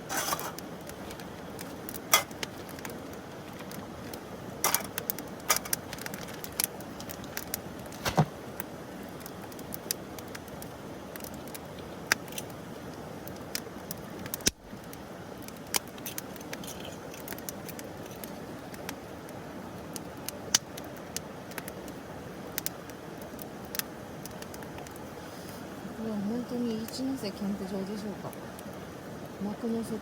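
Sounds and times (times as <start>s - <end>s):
wood fire crackling: 0.0s - 30.0s.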